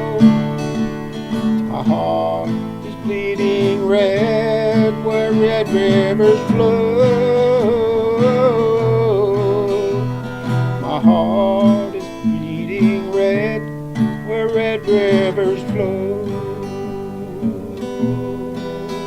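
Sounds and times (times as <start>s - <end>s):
acoustic guitar country music: 0.0s - 19.0s.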